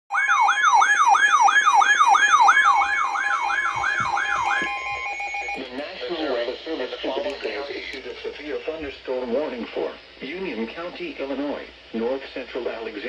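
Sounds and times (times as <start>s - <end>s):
electronic alert tones with whoop: 0.2s - 5.6s.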